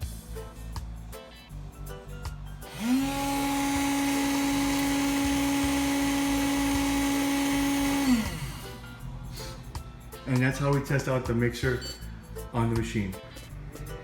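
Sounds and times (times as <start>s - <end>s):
vending machine mixer motor whining: 2.6s - 9.1s.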